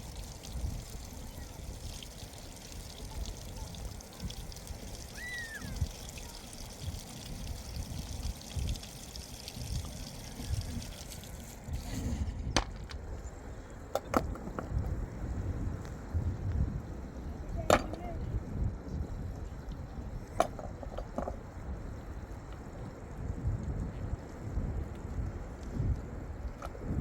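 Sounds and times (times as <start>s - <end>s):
water pouring: 0.0s - 12.4s.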